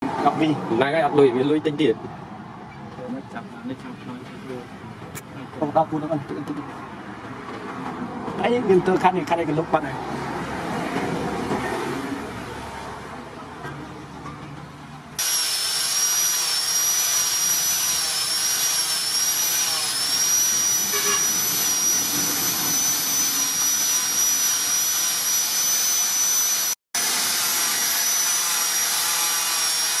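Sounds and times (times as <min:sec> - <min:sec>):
electric power tool whining: 0:15.2 - 0:30.0.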